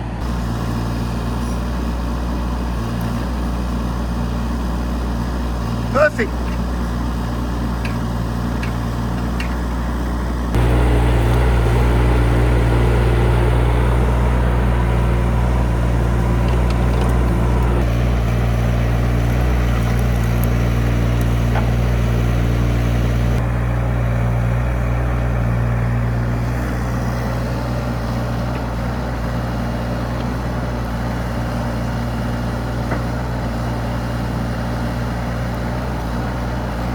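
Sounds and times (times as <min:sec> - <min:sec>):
excavator diesel engine running: 0:00.0 - 0:36.9.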